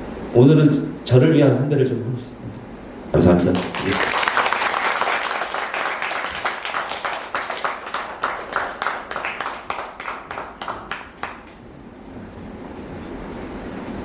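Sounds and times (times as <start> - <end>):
audience applause: 3.6 - 11.6.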